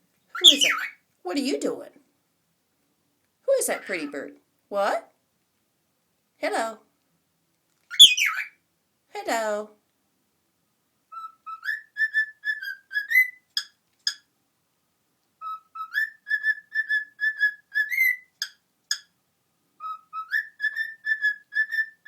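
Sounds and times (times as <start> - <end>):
cockatiel whistling a tune: 0.3 - 1.0, 7.9 - 8.6, 11.1 - 14.2, 15.4 - 19.0, 19.8 - 22.0.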